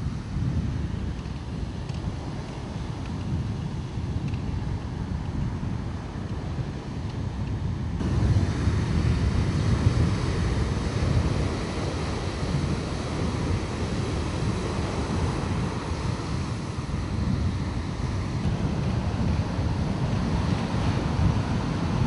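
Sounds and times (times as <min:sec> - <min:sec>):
wind buffeting microphone: 0:00.0 - 0:22.0
sea surf: 0:08.0 - 0:22.0.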